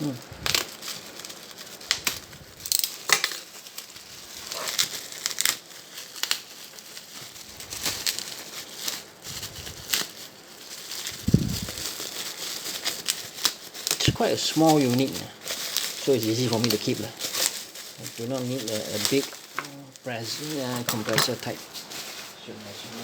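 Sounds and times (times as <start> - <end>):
packaging crinkling and rustling: 0.0 - 23.0.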